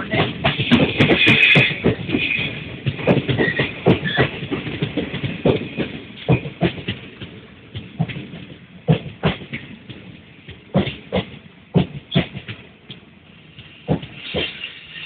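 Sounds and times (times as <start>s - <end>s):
train wheels clacking over rail joints: 0.0s - 15.0s
high wheel squeals: 3.4s - 4.3s.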